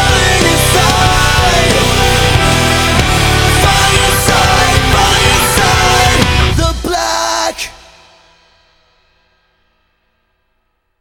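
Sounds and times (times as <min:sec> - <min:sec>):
heavy rock music: 0:00.0 - 0:08.3.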